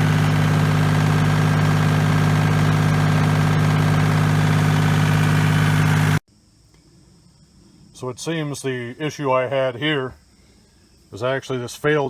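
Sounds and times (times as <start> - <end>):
tractor diesel engine running: 0.0 - 6.2.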